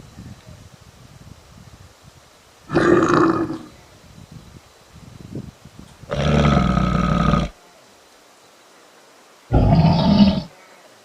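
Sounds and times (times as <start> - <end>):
large animal growling: 2.7 - 3.7, 6.1 - 7.5, 9.5 - 10.5.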